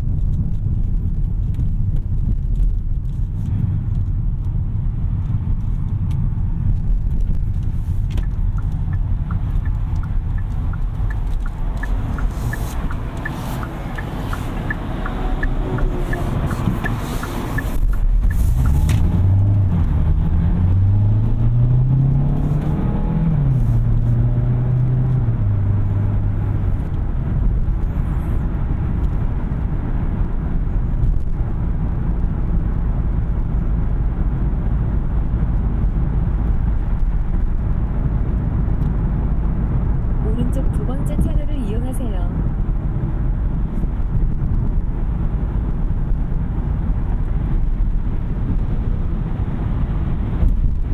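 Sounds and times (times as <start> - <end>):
road and tyre rumble: 0.0 - 50.9
car engine accelerating: 0.9 - 50.9
turn signal ticking: 5.8 - 30.4.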